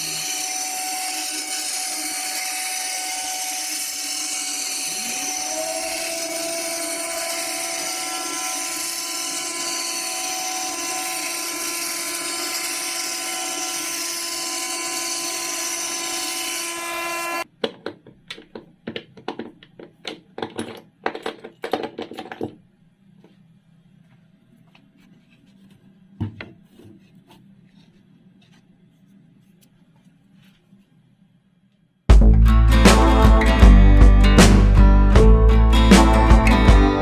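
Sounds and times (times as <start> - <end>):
power tool motor whining: 0.0 - 17.4
clicks and knocks of tools: 17.6 - 22.6.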